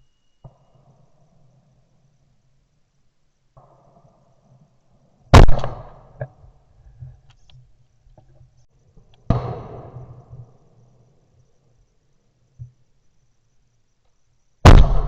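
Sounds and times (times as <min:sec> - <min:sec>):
shotgun shots with echo: 0:05.4 - 0:06.1, 0:14.7 - 0:15.0.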